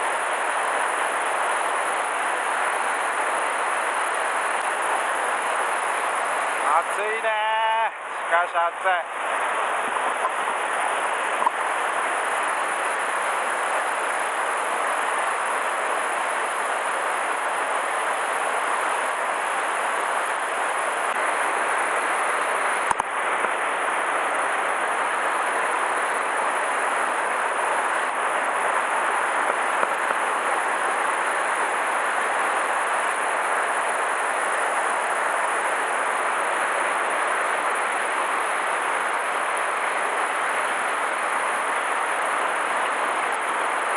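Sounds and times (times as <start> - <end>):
river rushing: 9.1 - 43.9.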